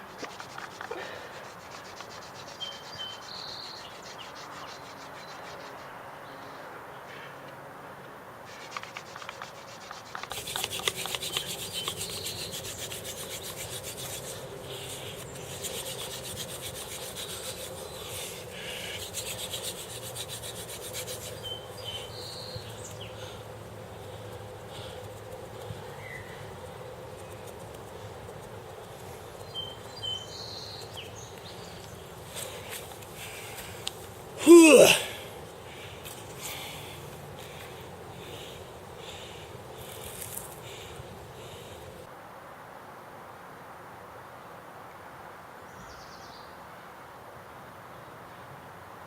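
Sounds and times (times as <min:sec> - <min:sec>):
wood-on-wood rubbing: 0:08.6 - 0:30.0.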